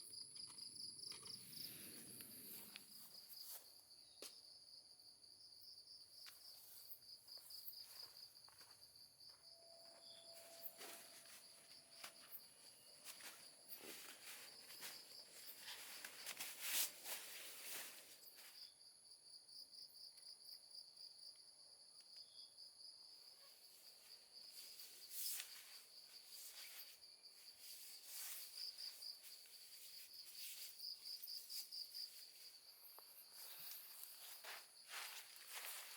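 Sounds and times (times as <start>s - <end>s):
insects trilling: 5.6s - 18.8s, 21.9s - 35.9s
soft rustles and clicks: 10.4s - 18.5s.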